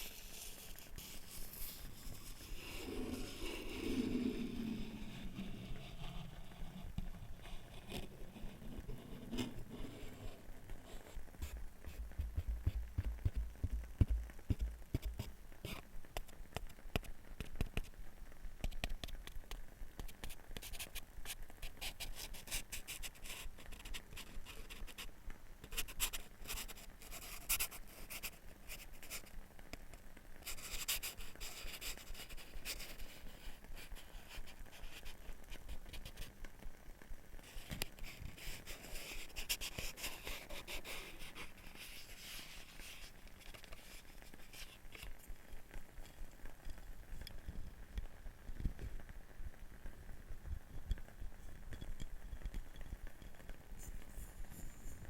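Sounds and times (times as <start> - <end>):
scratching and tapping on wood: 5.3 - 18.0, 18.6 - 29.8.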